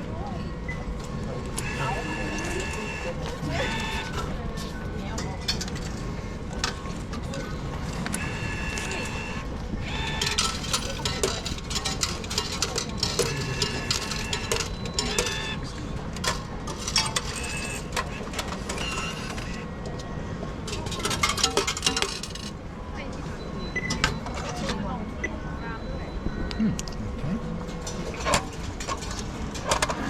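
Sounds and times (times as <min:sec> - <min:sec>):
electronic beeps: 0:01.6 - 0:04.4.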